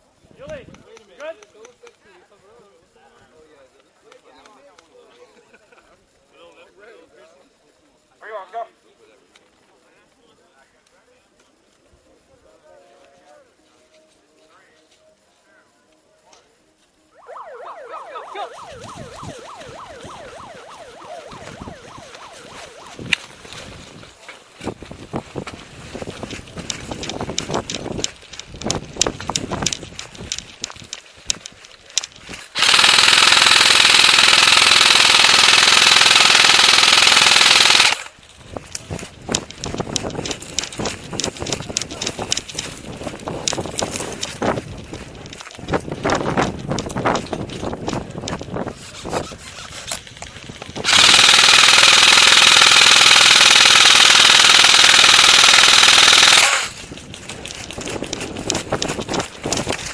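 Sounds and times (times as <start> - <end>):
footsteps: 16.4 - 32.6, 38.2 - 50.9, 56.4 - 59.9
airsoft gun full-auto burst: 32.5 - 38.2, 50.8 - 56.8.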